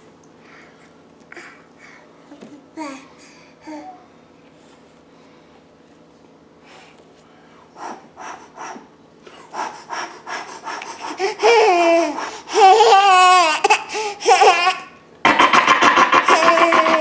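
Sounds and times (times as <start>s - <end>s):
baby babbling: 11.0s - 14.9s, 16.2s - 17.0s.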